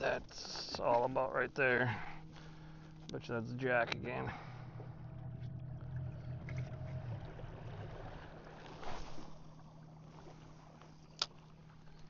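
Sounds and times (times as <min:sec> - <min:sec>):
electric motor humming: 0:01.6 - 0:10.4
water rushing past hull: 0:03.9 - 0:11.8.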